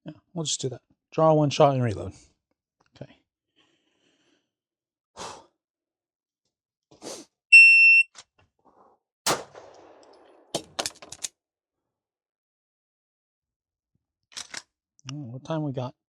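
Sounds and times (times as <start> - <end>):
shot timer beep: 7.5 - 8.1
pistol shot: 9.3 - 10.8.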